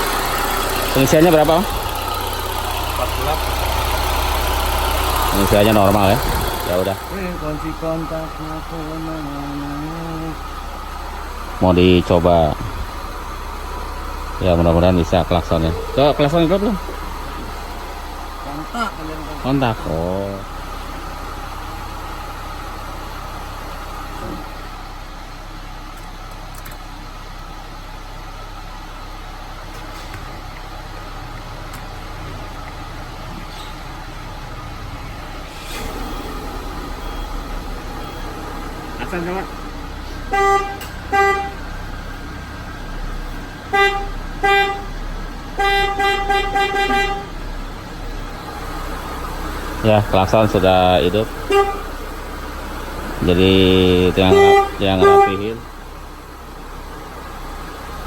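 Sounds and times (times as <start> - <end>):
car engine idling: 0.0 - 58.0
car horn tooting: 40.3 - 41.7, 43.6 - 47.4, 51.4 - 52.0, 53.2 - 55.7.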